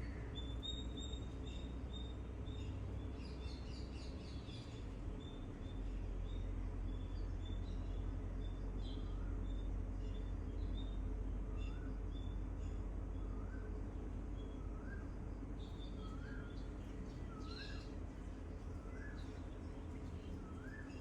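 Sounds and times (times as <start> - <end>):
steady low rumble: 7.6 - 21.0
bird high chirp: 14.4 - 18.0, 18.6 - 21.0.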